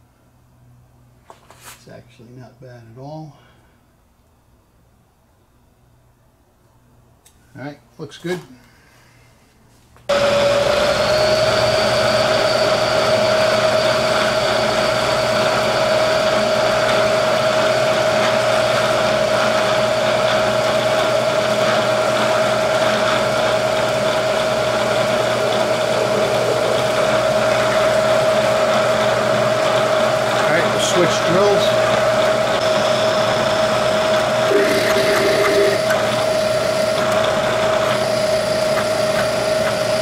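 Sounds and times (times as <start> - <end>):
mechanical hum: 0.0 - 40.0
milling machine spindle whine: 10.1 - 40.0.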